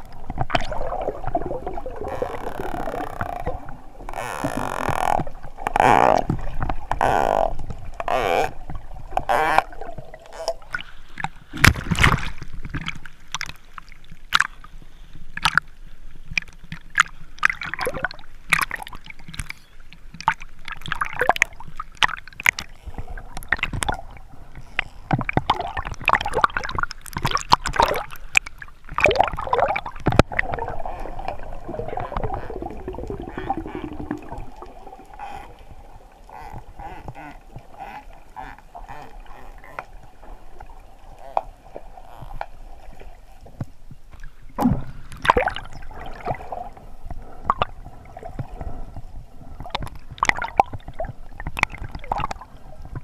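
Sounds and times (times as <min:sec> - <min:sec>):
water gurgling and sloshing: 0:00.0 - 0:53.0
sharp clicks and pops: 0:15.4 - 0:15.7, 0:16.3 - 0:24.0, 0:24.6 - 0:34.4.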